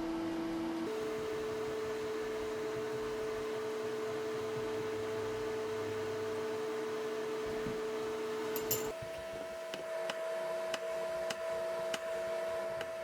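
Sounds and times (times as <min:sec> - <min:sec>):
exhaust fan humming: 0:00.8 - 0:09.8.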